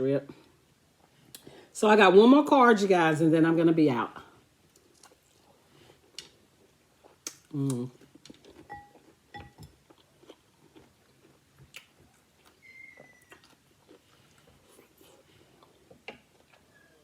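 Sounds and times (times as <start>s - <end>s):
person chewing: 4.7s - 17.0s.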